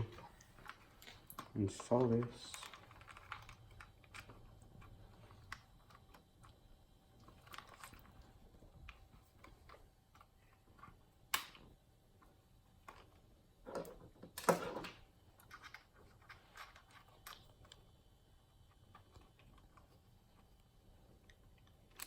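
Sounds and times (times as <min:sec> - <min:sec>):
plastic parts clicking and tapping: 0:00.0 - 0:06.6, 0:12.8 - 0:17.8.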